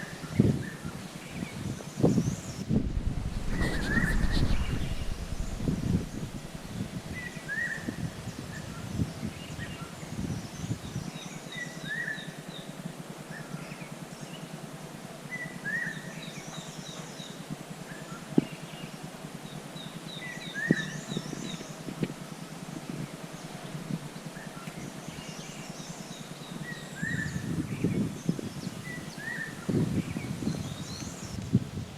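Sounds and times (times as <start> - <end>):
low rumble: 2.6 - 7.2.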